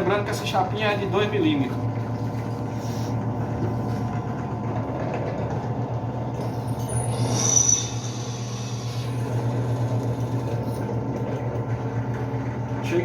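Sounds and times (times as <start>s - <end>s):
drill press motor hum: 1.6s - 13.0s
drill bit squealing: 6.4s - 11.0s.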